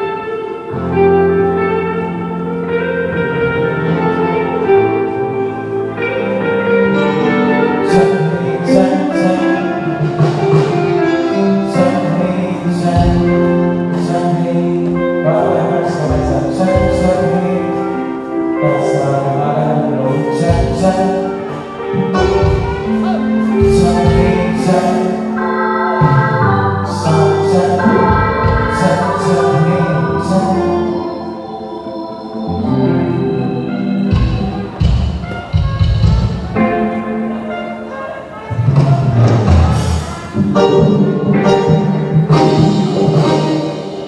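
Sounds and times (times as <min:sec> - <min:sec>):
live band playing: 0:00.0 - 0:44.0
person singing: 0:00.0 - 0:44.0
drum hits: 0:22.0 - 0:25.0.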